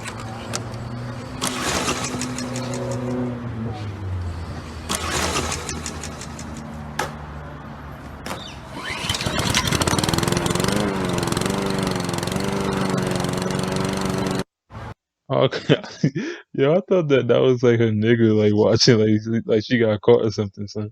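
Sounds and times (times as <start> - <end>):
starter cord tugs: 0.0 - 3.2, 4.8 - 7.2, 8.3 - 14.4
lawn mower engine running: 0.0 - 3.4, 4.2 - 14.5.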